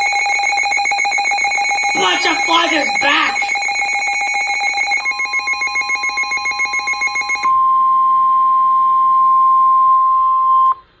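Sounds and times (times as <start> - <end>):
pulsing electronic alarm buzz: 0.0 - 7.7
steady high warning tone: 0.0 - 10.6.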